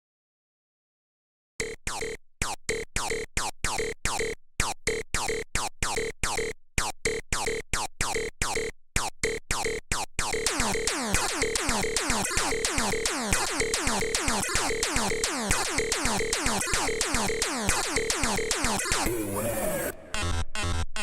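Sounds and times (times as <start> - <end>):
chopped synth stabs: 10.3 - 20.8.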